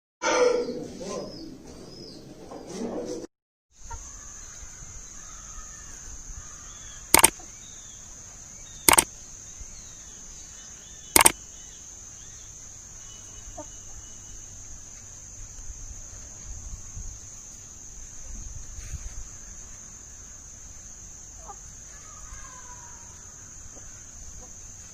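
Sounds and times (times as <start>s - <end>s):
faint bird chirps: 3.9s - 14.6s.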